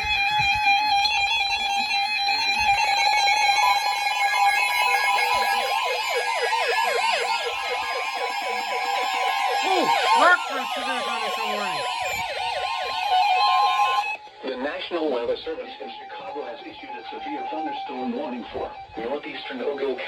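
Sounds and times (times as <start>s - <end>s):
fast warbling siren: 1.6s - 14.2s
steady harsh alarm tone: 2.6s - 14.2s.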